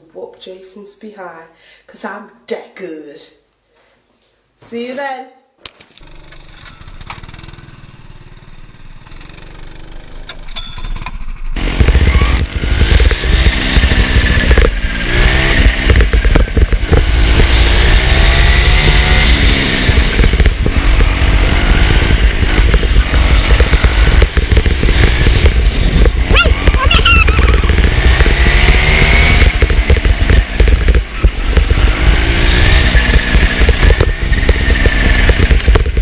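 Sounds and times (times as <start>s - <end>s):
go-kart engines revving: 6.0s - 10.4s, 11.6s - 36.0s.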